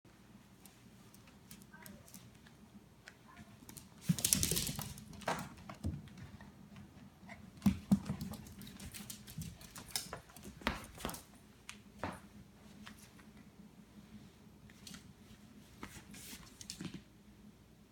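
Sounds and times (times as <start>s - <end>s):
dog claws clicking on floor: 0.6s - 6.0s, 7.6s - 12.2s.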